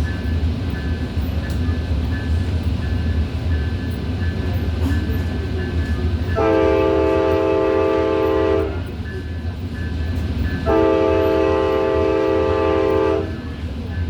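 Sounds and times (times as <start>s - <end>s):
low rumble of moving train: 0.0s - 14.0s
train air horn blasts: 6.3s - 9.0s, 10.6s - 13.5s.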